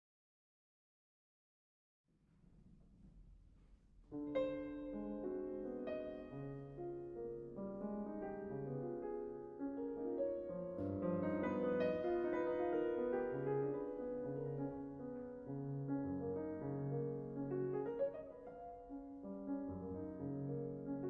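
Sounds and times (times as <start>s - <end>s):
solo piano classical piece: 2.5s - 21.0s.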